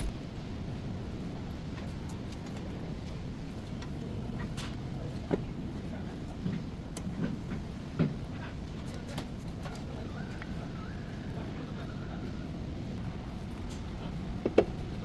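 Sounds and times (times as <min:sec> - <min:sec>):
steady low rumble: 0:00.0 - 0:01.8.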